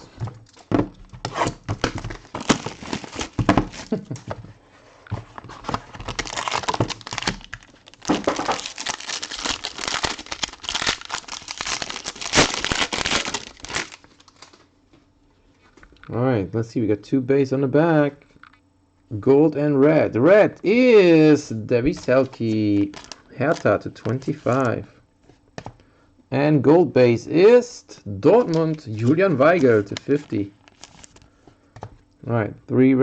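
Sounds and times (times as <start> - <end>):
plastic wrapping crinkling: 1.4 - 4.1, 5.4 - 14.7, 21.9 - 24.6, 28.4 - 31.3.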